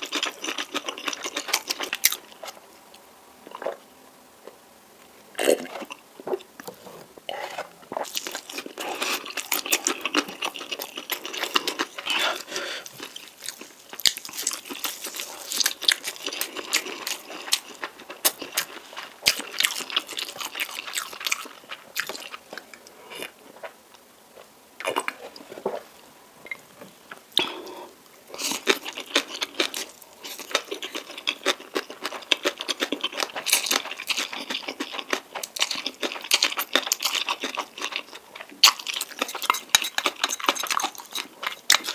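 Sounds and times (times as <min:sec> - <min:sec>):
wet chewing and mouth clicks: 0:07.4 - 0:23.7, 0:28.3 - 0:41.9.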